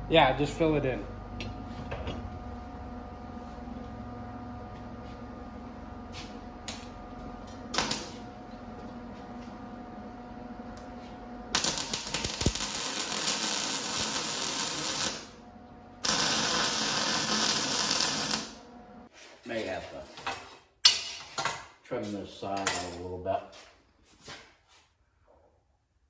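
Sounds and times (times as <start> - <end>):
steady hum: 0.0 - 19.1
welding arc crackling: 7.7 - 8.2, 11.5 - 15.4, 16.0 - 18.7.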